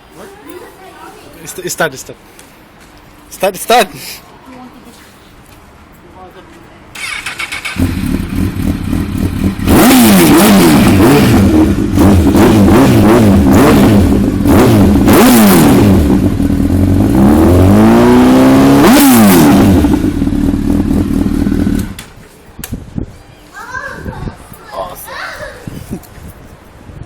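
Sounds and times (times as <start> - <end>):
motorcycle engine revving: 7.0 - 22.0.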